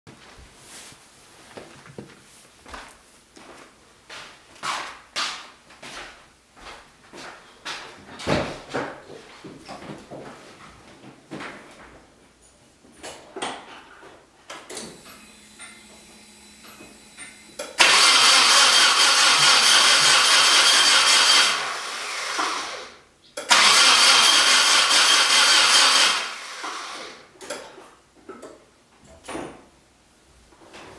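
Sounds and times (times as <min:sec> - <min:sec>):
starter motor cranking: 0:16.6 - 0:27.2.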